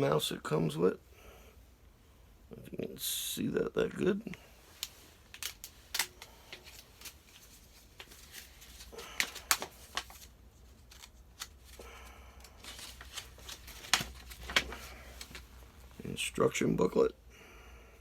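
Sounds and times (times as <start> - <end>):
plastic and paper rustling: 4.6 - 16.0.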